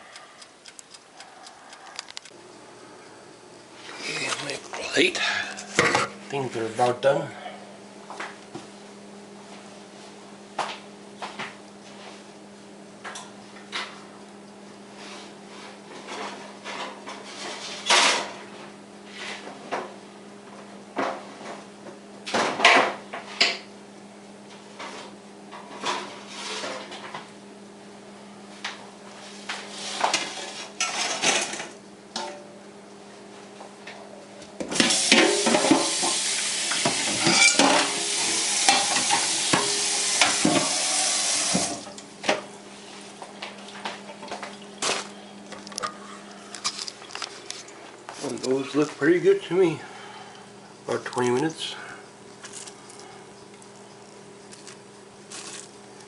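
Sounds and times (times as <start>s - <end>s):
loud steady hiss: 34.7s - 41.9s.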